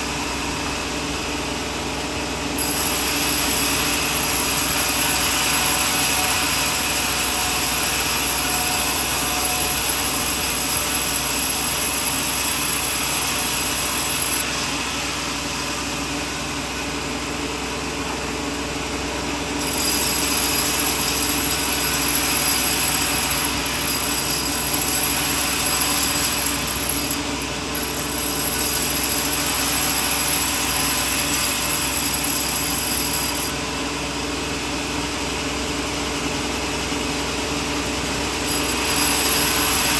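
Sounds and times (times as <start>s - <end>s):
sawmill motor running: 0.0s - 36.9s, 37.5s - 39.9s
saw blade cutting wood: 2.6s - 14.5s, 19.6s - 33.6s, 38.5s - 39.9s.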